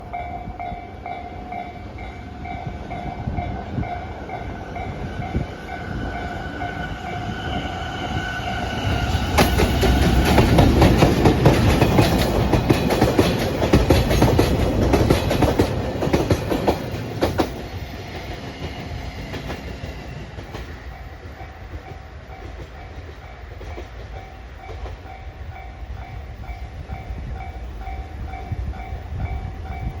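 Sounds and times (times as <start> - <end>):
freight train passing: 0.0 - 30.0
wheels clicking over rail joints: 9.2 - 25.2.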